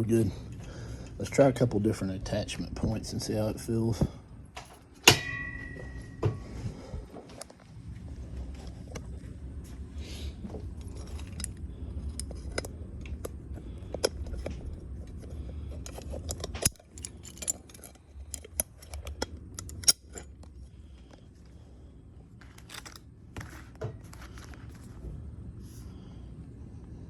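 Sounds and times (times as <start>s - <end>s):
low steady hum: 0.0s - 27.0s
metal hardware clinking: 4.6s - 6.6s, 10.8s - 12.7s, 15.7s - 20.6s, 22.4s - 24.9s.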